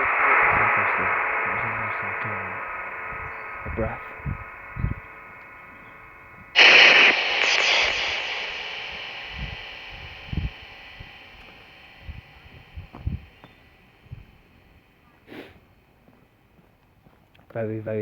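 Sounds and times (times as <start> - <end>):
radio static hiss: 0.0 - 16.0
faint steady whine: 0.0 - 18.0
soft low thumps: 9.3 - 14.5.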